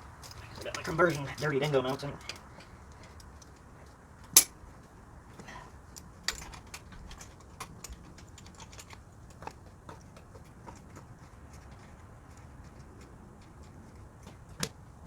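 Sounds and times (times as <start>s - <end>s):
hand tools clinking against metal: 0.1s - 4.8s, 5.4s - 9.6s.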